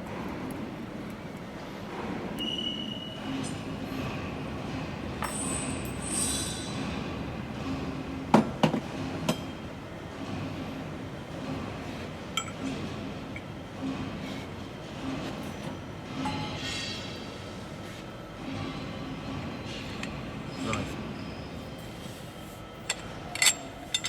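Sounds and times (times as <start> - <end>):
low workshop hum: 0.0 - 24.0
metal clinks and knocks: 22.9 - 24.0.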